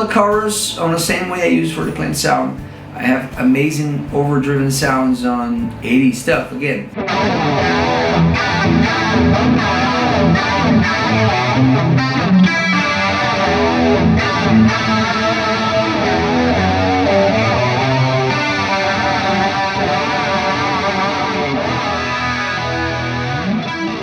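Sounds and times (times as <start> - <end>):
overdriven electric guitar: 5.5 - 24.0.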